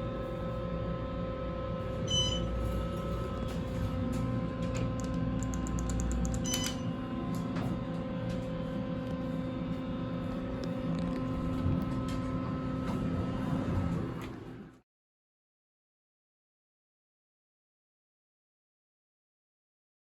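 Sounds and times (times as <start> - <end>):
steady mechanical hum: 0.0 - 14.8.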